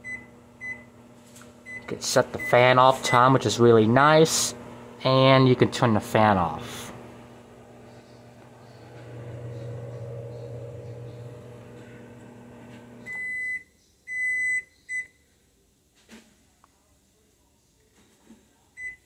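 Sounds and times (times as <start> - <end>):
microwave oven humming: 0.0 - 13.6.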